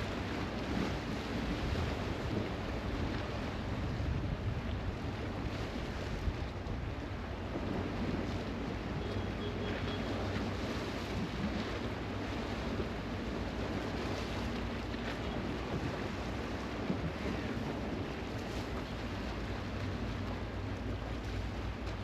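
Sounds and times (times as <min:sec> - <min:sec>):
wind buffeting microphone: 0:00.0 - 0:08.4
surf washing against shore: 0:00.0 - 0:22.0.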